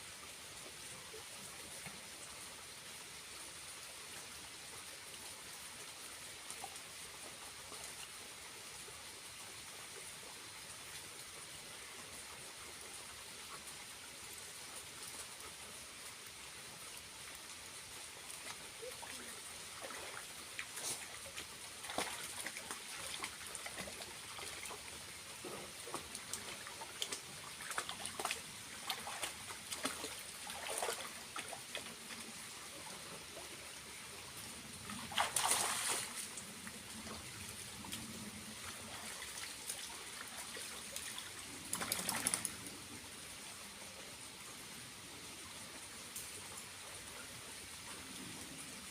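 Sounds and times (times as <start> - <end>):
water trickling from waterfall: 0.0 - 48.9
water splashing: 21.8 - 24.8, 25.9 - 31.9, 35.0 - 36.4.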